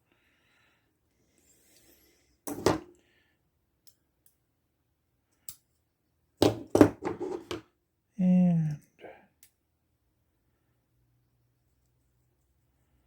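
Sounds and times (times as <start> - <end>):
tools knocking on workbench: 2.5 - 2.9, 6.4 - 7.6.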